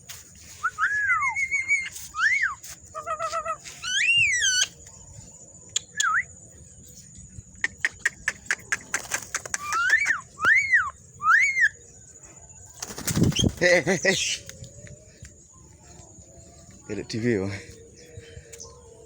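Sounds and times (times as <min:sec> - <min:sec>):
bird whistling calls: 0:00.5 - 0:04.8, 0:09.5 - 0:11.9
harsh bird chattering: 0:07.5 - 0:10.2.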